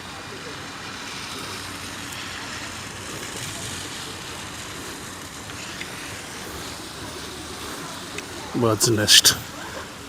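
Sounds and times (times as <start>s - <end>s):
even hiss: 2.2s - 9.7s.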